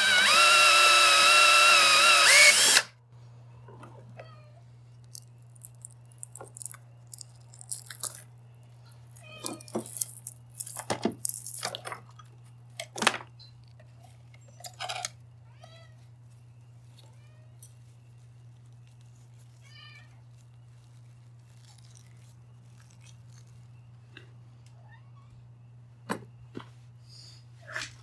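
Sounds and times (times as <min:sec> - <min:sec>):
rustles and crunching handling noises: 0:15.9 - 0:24.6.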